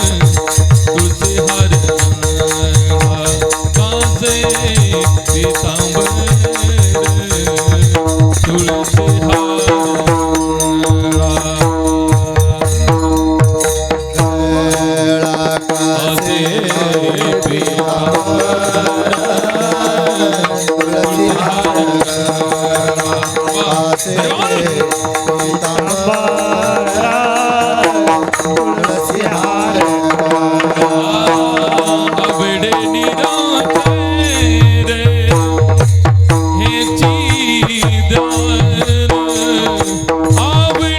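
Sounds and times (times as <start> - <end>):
low hand-drum strokes: 0.0 - 15.4
person singing devotional melody: 0.0 - 40.9.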